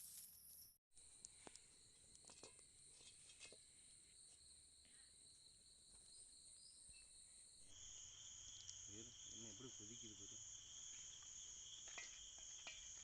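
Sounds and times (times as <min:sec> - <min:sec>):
insects chirring: 0:00.0 - 0:13.0
faint clicks: 0:08.6 - 0:08.8.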